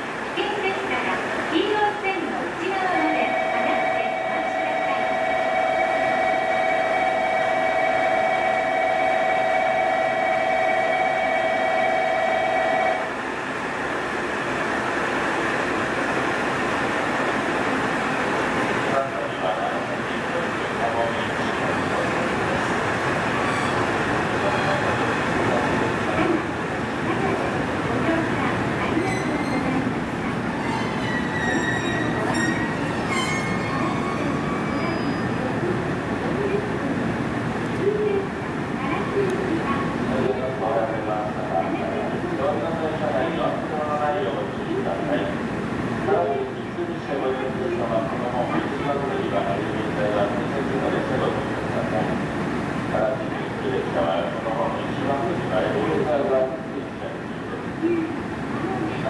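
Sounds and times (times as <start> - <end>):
train humming: 0.0 - 59.0
high-pitched squeals: 28.9 - 29.9, 30.5 - 35.4.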